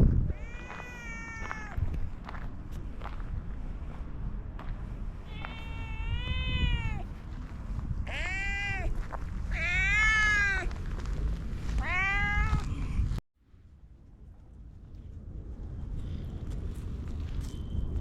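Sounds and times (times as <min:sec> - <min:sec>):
cat meowing: 0:00.2 - 0:02.0, 0:05.3 - 0:07.1, 0:08.1 - 0:10.7, 0:11.8 - 0:12.9.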